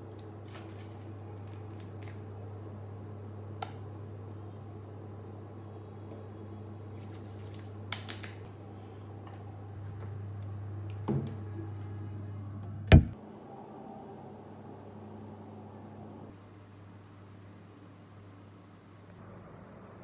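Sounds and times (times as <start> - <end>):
steady low hum: 12.0 - 13.2
knock: 12.9 - 13.2
sharp loud thump: 12.9 - 13.2.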